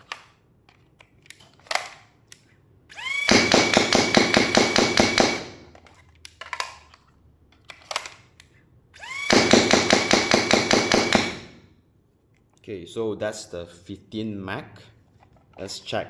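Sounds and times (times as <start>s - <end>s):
foam dart blaster firing: 3.2s - 5.6s, 9.2s - 11.6s.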